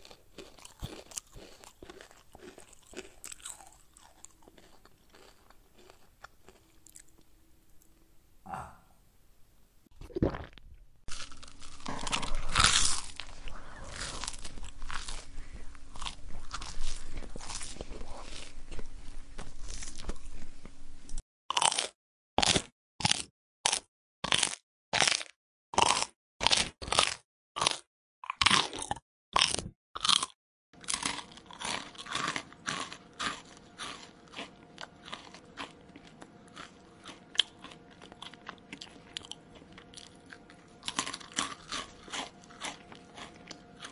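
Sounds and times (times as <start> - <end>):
chewing crunchy food: 0.0 - 8.0, 10.0 - 43.9
faint steady hum: 0.0 - 21.2, 30.8 - 43.9.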